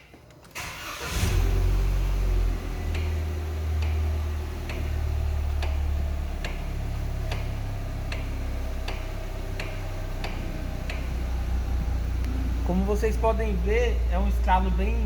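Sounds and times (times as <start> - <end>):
car engine idling: 0.6 - 15.0
steering column clicking: 2.9 - 11.3.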